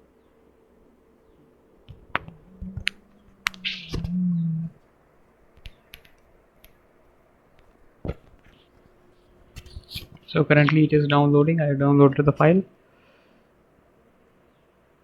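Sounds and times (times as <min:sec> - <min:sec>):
low steady hum: 0:00.0 - 0:15.0
sharp clicks and knocks: 0:01.9 - 0:04.2
dull thud: 0:01.9 - 0:04.3.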